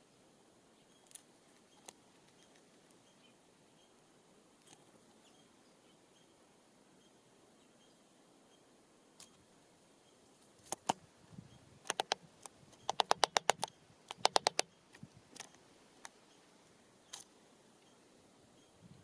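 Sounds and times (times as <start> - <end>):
bird pecking at seed block: 10.6 - 11.0, 11.8 - 16.2.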